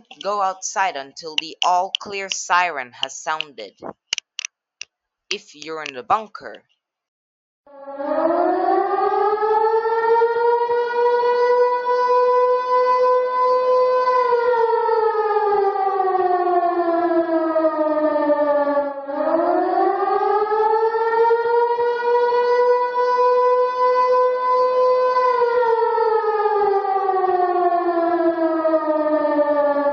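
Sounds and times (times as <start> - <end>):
civil defense siren wailing: 7.7 - 29.9.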